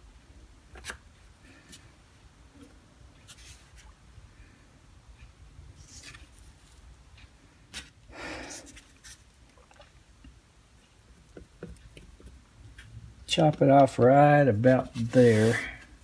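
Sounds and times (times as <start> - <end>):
tools scratching: 14.6 - 15.9.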